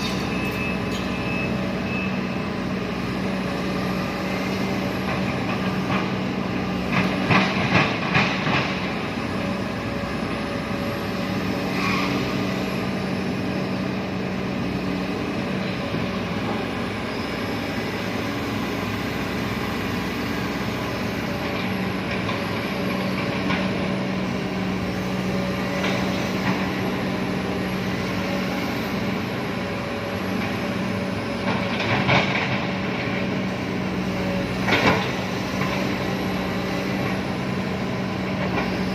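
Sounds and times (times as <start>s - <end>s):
sharp metal clanks: 0.0s - 1.2s
diesel engine running: 0.0s - 38.9s.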